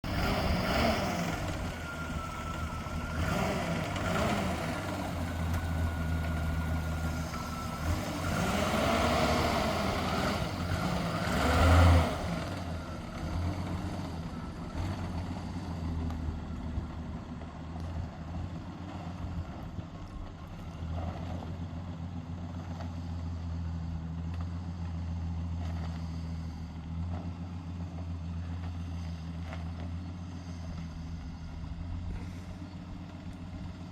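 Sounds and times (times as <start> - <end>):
car engine running: 0.0 - 33.9.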